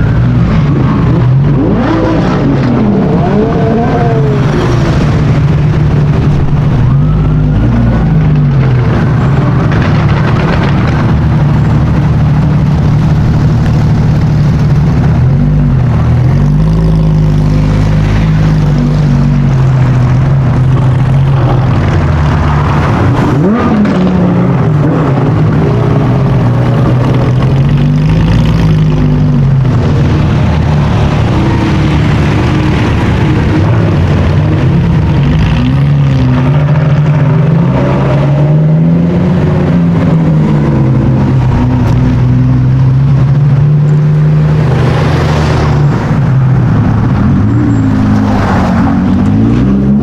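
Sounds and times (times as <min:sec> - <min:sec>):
sports car engine running: 0:00.0 - 0:35.9.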